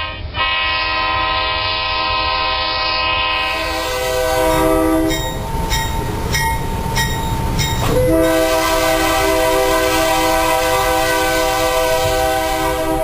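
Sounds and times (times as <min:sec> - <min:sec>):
locomotive air horn: 0:00.0 - 0:05.2, 0:07.8 - 0:13.0
train rumble: 0:00.0 - 0:13.0
wheels clicking over rail joints: 0:04.6 - 0:08.5.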